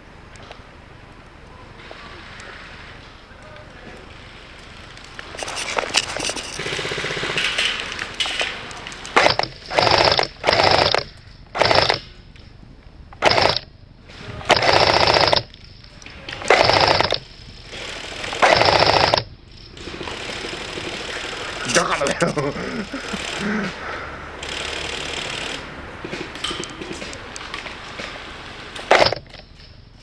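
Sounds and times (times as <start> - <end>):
scuffling noise: 5.2 - 6.6
airsoft gun firing bursts: 6.6 - 8.3, 9.1 - 12.1, 13.2 - 13.7, 14.5 - 15.5, 16.4 - 21.8, 24.4 - 25.7, 28.9 - 29.3.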